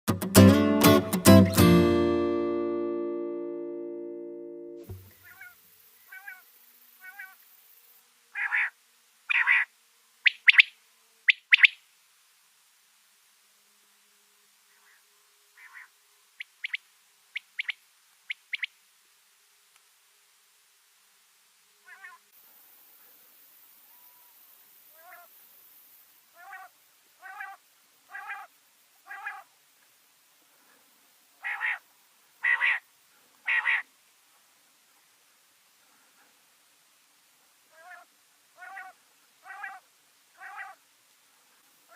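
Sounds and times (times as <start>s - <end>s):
quail calling: 5.1s - 6.4s, 7.0s - 7.4s, 8.3s - 10.7s, 11.3s - 11.8s, 15.6s - 16.8s, 17.4s - 18.7s, 21.8s - 22.2s, 24.9s - 25.3s, 26.3s - 29.5s, 31.4s - 31.8s, 32.4s - 32.8s, 33.4s - 33.9s, 37.7s - 39.8s, 40.4s - 40.8s.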